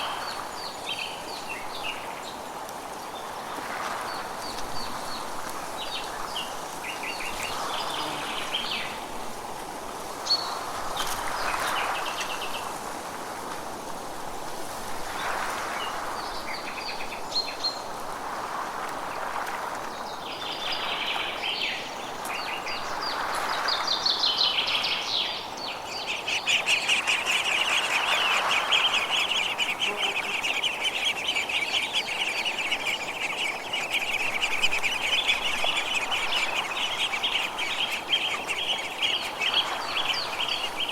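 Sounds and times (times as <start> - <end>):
forest birds chirping: 0.0 - 9.4, 19.9 - 40.9.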